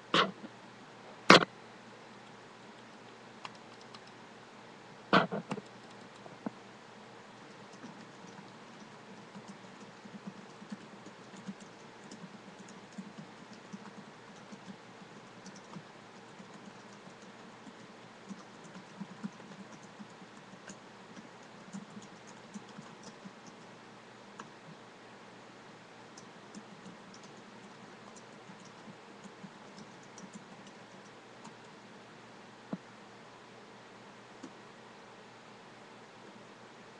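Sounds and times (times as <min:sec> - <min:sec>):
computer keyboard typing: 0:03.4 - 0:04.2, 0:05.3 - 0:06.3, 0:07.5 - 0:23.7, 0:26.2 - 0:31.6.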